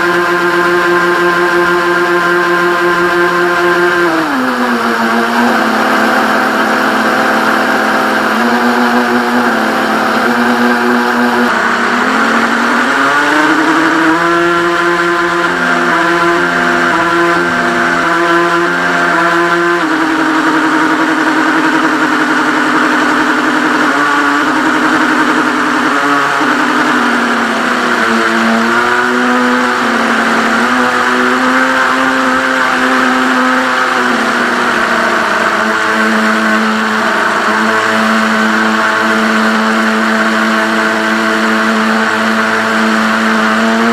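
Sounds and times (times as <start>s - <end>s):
toy boat motor whining: 0.0s - 43.9s.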